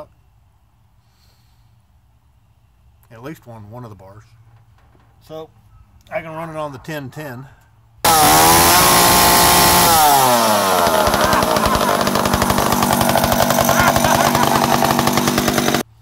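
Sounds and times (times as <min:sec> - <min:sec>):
chainsaw engine revving and idling: 0:08.0 - 0:15.9.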